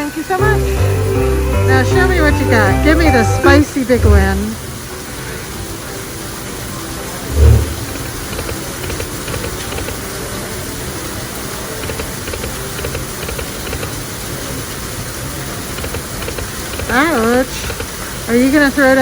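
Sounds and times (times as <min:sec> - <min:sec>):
waterfall rushing: 0:03.1 - 0:19.0
slot machine tones and ticks: 0:08.1 - 0:10.1, 0:11.8 - 0:14.1, 0:15.7 - 0:18.0.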